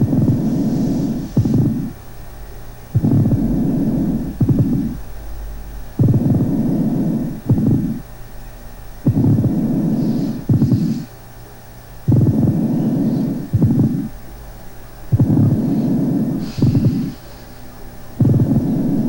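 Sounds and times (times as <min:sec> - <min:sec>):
rasping friction rub with breath: 0:00.0 - 0:02.0, 0:09.2 - 0:11.2, 0:15.2 - 0:19.0.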